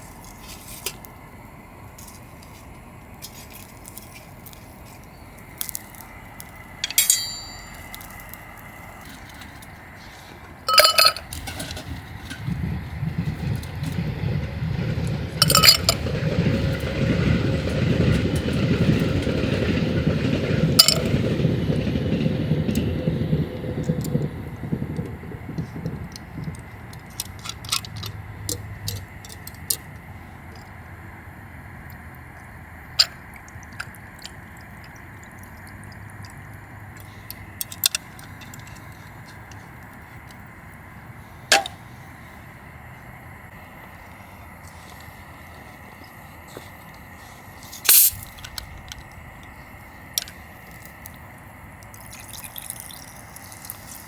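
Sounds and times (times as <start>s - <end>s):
train passing rumble: 0.0s - 54.0s
sharp clinks: 6.8s - 8.4s, 10.7s - 11.3s.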